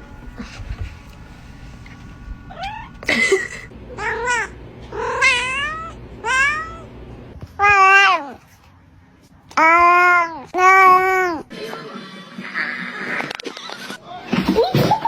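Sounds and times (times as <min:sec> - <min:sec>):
cat meowing: 0:02.5 - 0:03.0, 0:04.0 - 0:06.9, 0:07.6 - 0:08.4, 0:09.5 - 0:11.5.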